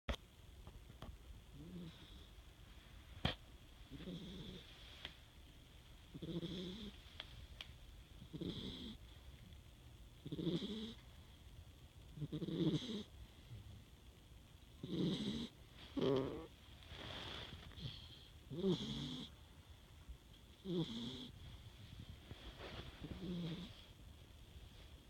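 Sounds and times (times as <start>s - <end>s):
low snoring: 3.9s - 4.7s, 6.1s - 7.0s, 8.3s - 9.0s, 10.2s - 11.0s, 12.2s - 13.1s, 14.8s - 19.3s, 20.6s - 21.4s, 23.0s - 23.9s.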